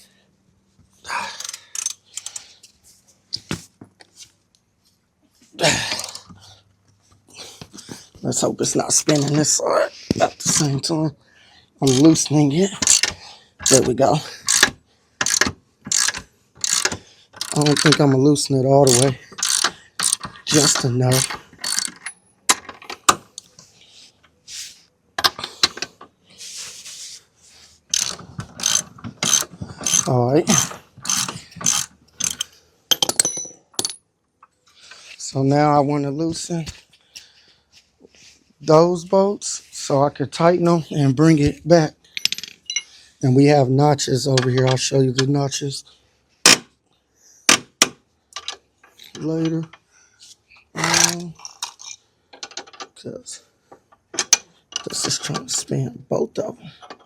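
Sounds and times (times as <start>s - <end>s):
wrench clicking and knocking: 1.4s - 2.4s, 11.9s - 18.2s, 18.8s - 23.2s, 27.9s - 34.0s, 46.5s - 46.7s
soft hissing and rustling: 26.3s - 27.8s.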